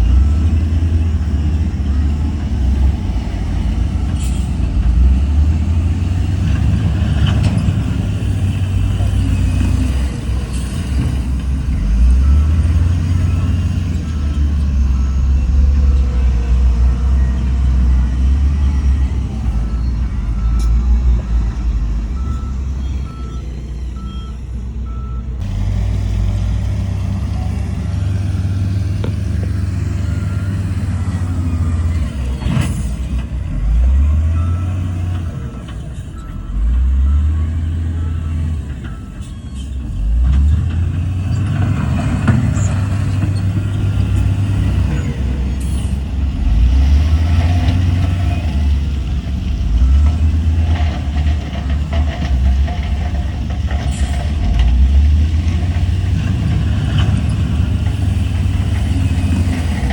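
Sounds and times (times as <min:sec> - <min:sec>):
heavy diesel machinery revving: 0:00.0 - 0:59.9
reversing alarm beeping: 0:08.8 - 0:25.3, 0:33.7 - 0:39.8.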